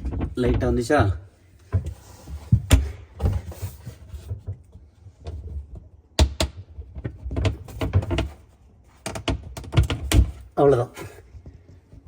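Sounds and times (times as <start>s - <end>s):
wooden board clicking and knocking: 6.2s - 8.4s.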